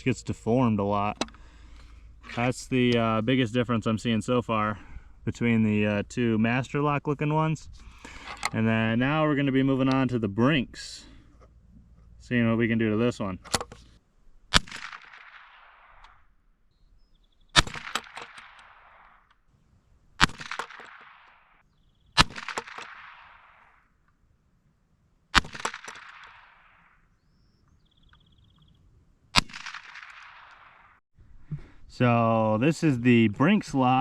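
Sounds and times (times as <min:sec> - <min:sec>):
gunshots with echo: 0:17.6 - 0:19.1, 0:20.2 - 0:21.4, 0:22.2 - 0:23.8, 0:25.4 - 0:27.0, 0:29.4 - 0:31.0.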